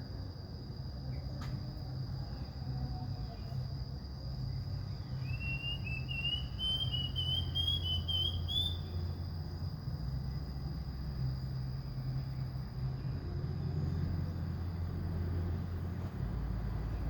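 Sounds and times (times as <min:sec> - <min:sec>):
bird whistling song: 0:05.0 - 0:09.0.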